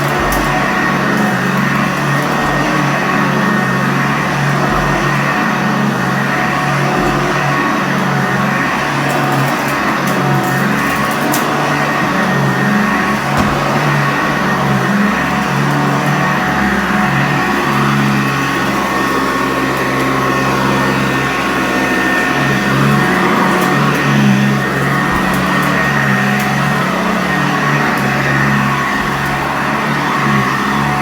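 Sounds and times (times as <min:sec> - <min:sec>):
upright vacuum cleaner on carpet: 0:00.0 - 0:31.0.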